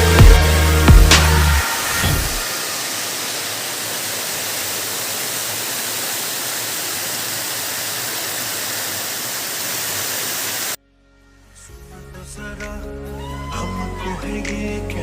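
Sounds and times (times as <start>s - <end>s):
waterfall rushing: 0.0s - 10.8s.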